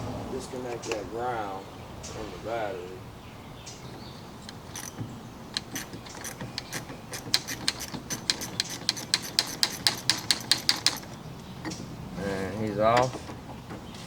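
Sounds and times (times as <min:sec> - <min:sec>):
ratchet wrench clicking: 0:04.5 - 0:11.1.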